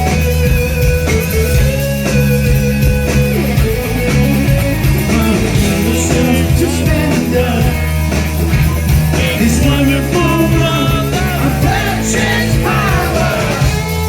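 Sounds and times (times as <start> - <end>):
bass guitar: 0.0 - 14.0
drums: 0.0 - 14.0
electric guitars: 0.0 - 14.0
man singing: 5.0 - 7.9, 9.1 - 13.8.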